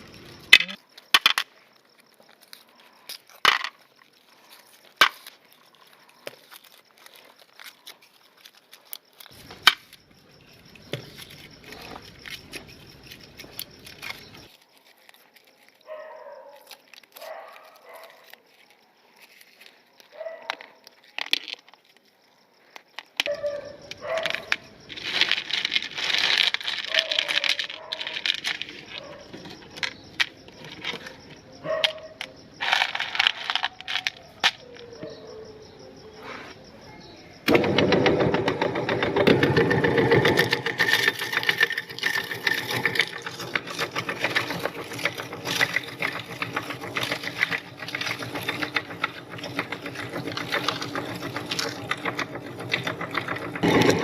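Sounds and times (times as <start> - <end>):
candy crackling in grinder: 0.0 - 15.9, 16.6 - 21.9, 23.9 - 31.2, 32.6 - 34.7, 37.5 - 54.0
rustling and clattering: 23.8 - 32.0, 37.5 - 54.0
electric meat grinder running: 37.5 - 54.0.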